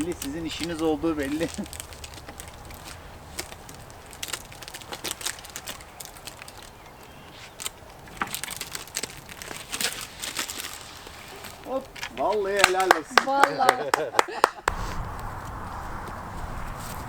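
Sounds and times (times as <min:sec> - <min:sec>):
dry wood cracking and snapping: 0:00.0 - 0:13.0.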